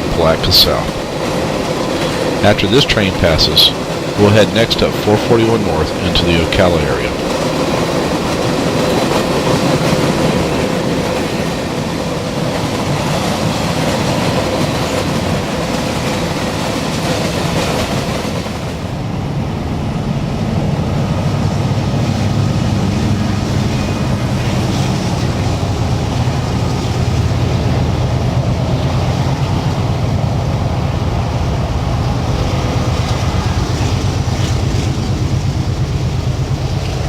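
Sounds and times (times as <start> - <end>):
train wheels on rails: 0.0 - 37.0
low engine hum: 18.1 - 37.0.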